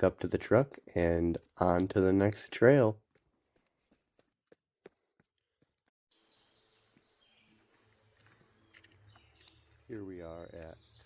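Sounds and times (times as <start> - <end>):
faint outdoor ambience: 0.0 - 4.0, 6.2 - 11.0
distant bird chirps: 6.1 - 11.0.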